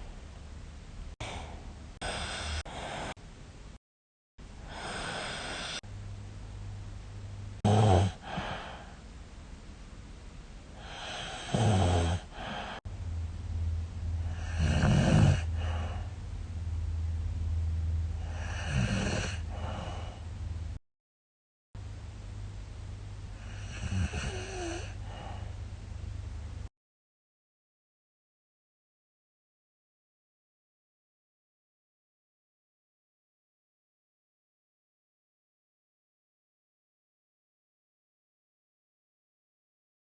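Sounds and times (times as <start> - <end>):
steady low hum: 0.0 - 3.8, 4.4 - 20.8, 21.8 - 26.7
woman snoring: 1.2 - 3.2, 4.7 - 5.8, 7.6 - 9.0, 10.8 - 12.8, 14.2 - 16.1, 18.2 - 20.2, 23.4 - 25.4.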